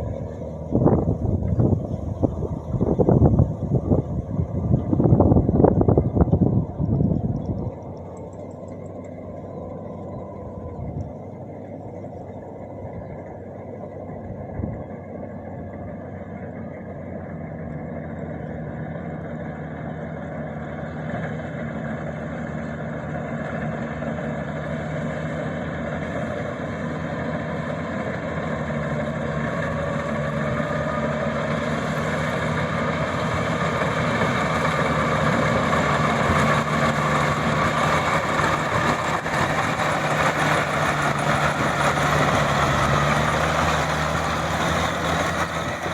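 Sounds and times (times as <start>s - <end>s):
combine harvester engine running: 0.0s - 45.9s.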